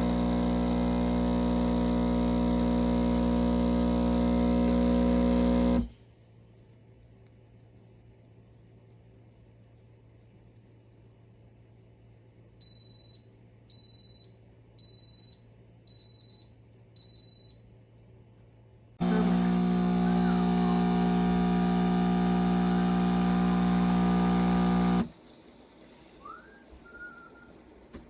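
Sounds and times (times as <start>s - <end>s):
espresso machine beeping: 0.0s - 5.9s, 19.0s - 25.1s
espresso machine pump running: 0.0s - 5.9s, 19.0s - 25.2s.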